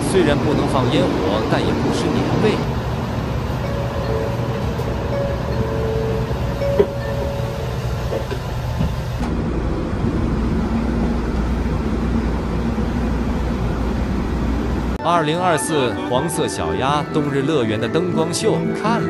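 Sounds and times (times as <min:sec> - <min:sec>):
train rumbling: 0:00.0 - 0:15.2.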